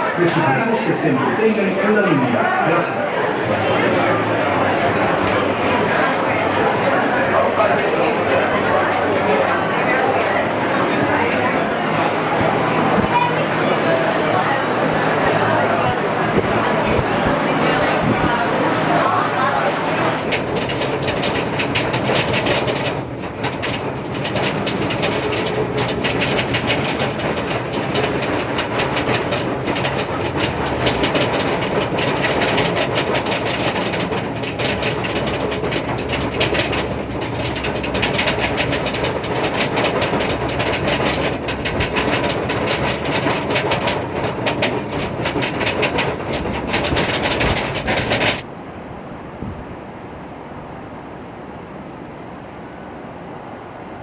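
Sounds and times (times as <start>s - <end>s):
wheels clattering on rail: 0.0s - 48.6s.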